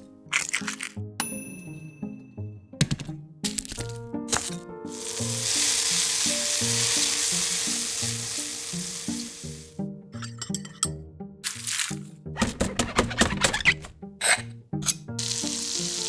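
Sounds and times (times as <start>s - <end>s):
food sizzling in frying pan: 4.4s - 9.7s, 15.2s - 16.0s.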